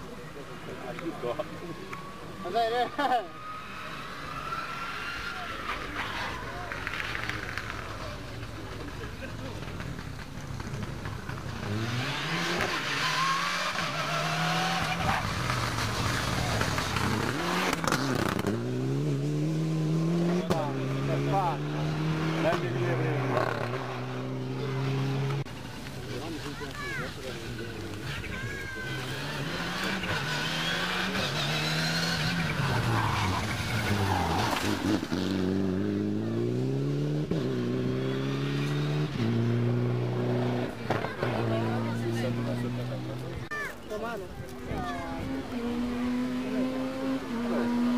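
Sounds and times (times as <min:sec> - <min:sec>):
rally car engine revving: 0:08.8 - 0:43.5, 0:44.7 - 0:47.9.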